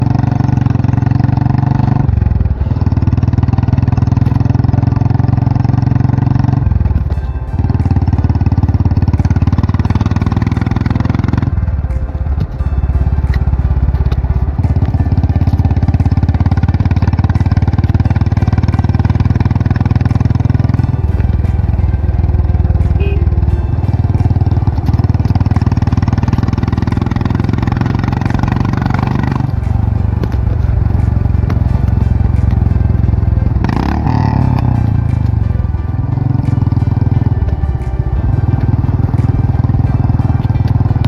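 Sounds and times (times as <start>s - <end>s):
motorcycle engine running: 0.0s - 41.0s.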